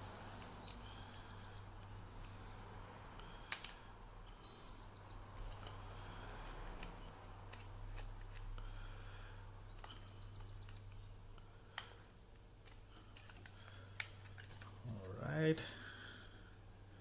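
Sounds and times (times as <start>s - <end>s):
low steady hum: 0.0s - 17.0s
clicks of small parts handled: 11.7s - 14.8s.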